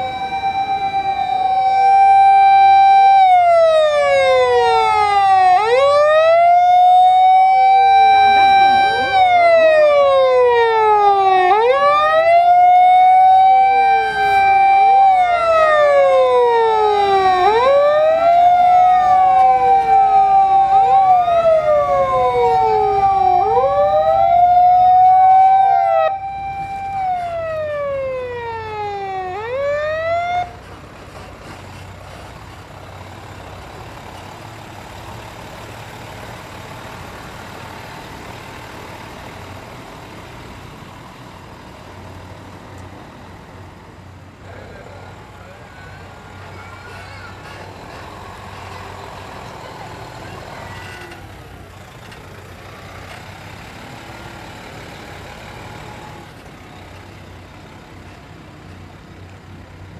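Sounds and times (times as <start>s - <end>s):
fire engine sirens wailing: 0.0s - 31.2s, 43.4s - 59.9s
heavy vehicle engines running: 0.0s - 59.9s.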